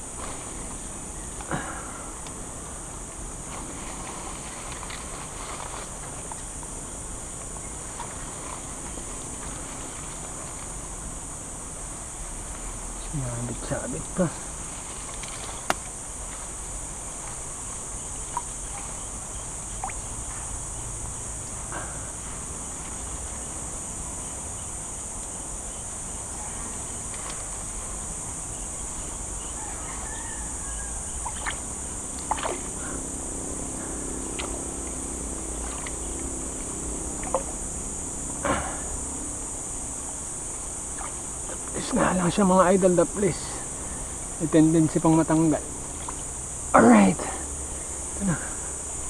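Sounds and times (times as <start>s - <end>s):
high-pitched insect chorus: 0.0s - 49.0s.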